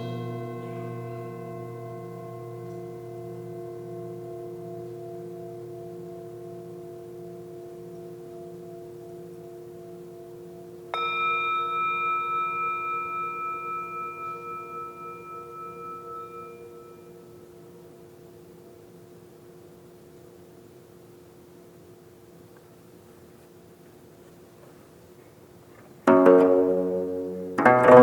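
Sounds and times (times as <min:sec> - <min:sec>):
singing bowl struck and ringing: 0:00.0 - 0:17.8
low hum of singing bowls: 0:00.0 - 0:22.3.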